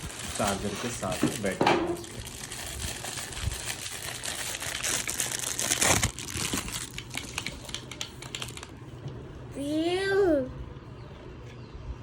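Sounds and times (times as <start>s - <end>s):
packaging crinkling and rustling: 0.0s - 8.8s.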